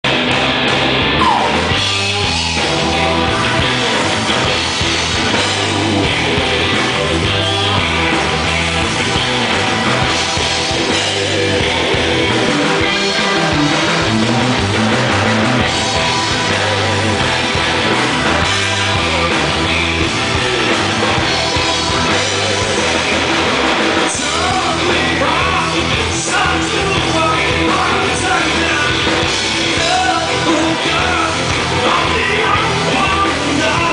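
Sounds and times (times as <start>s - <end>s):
rock band playing live: 0.0s - 33.9s
person singing: 15.8s - 33.9s.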